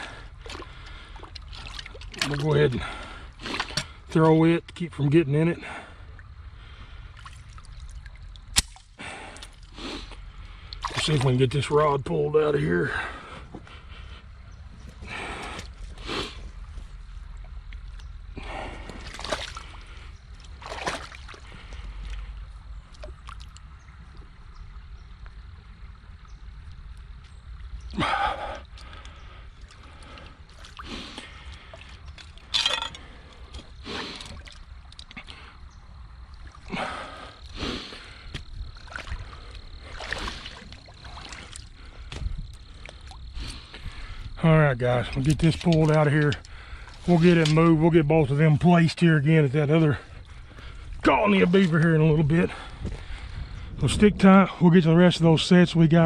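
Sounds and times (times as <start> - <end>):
water splashing and sloshing: 0.0 - 55.3
person breathing strained: 28.0 - 31.8.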